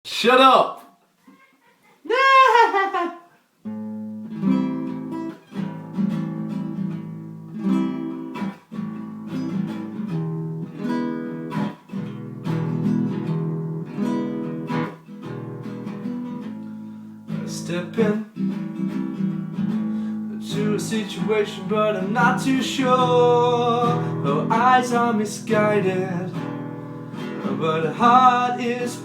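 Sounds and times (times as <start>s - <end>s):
acoustic guitar strumming chords: 3.7s - 29.0s.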